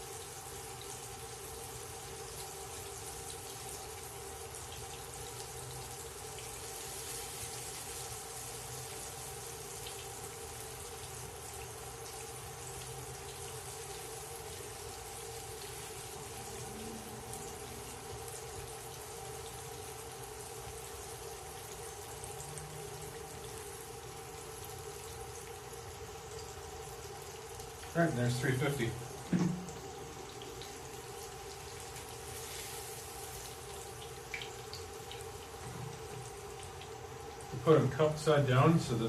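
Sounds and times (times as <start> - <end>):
fish frying in oil: 0.0 - 39.0
steady hum: 21.6 - 35.0.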